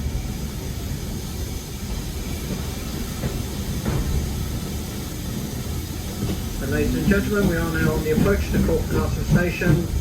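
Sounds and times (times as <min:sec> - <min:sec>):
train coach rumbling: 0:00.0 - 0:10.0
train wheel clicks: 0:05.4 - 0:10.0.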